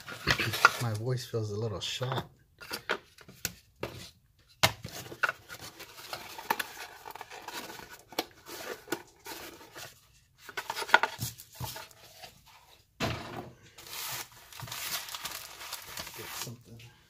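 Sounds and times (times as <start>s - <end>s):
packaging rustling and crinkling: 4.9s - 12.5s, 13.8s - 16.6s.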